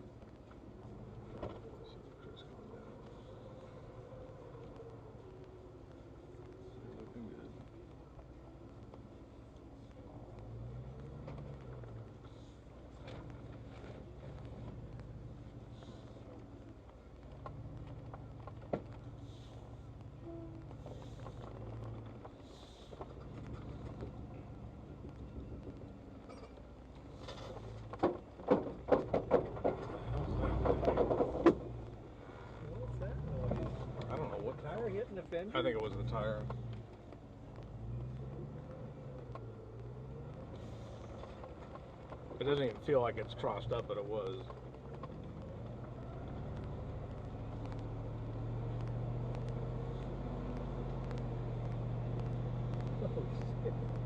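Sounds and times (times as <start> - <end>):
vehicle engine running: 0.0 - 28.0, 29.2 - 54.0
sharp knocks and clunks: 27.3 - 31.8.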